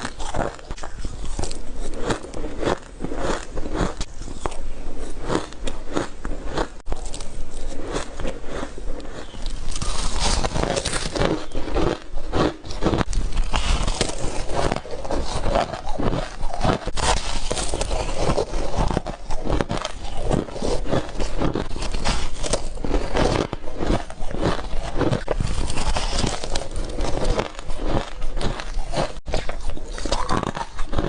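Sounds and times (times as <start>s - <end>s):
ice being crunched: 7.0s - 31.0s.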